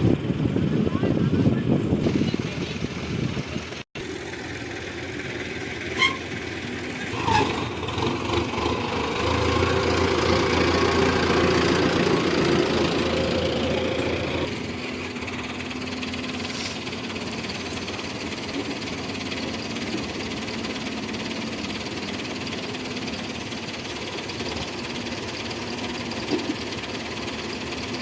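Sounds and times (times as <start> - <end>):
diesel engine of heavy machinery: 0.0 - 28.0.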